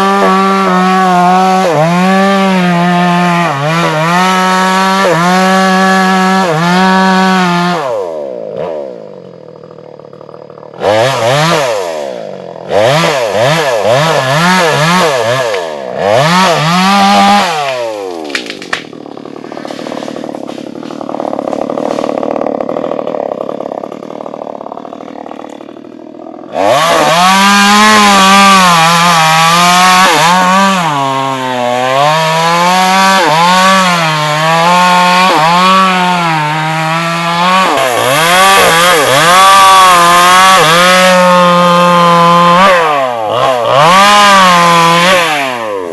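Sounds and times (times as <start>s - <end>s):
chainsaw cutting wood: 0.0s - 45.9s
chainsaw revving: 0.0s - 45.9s.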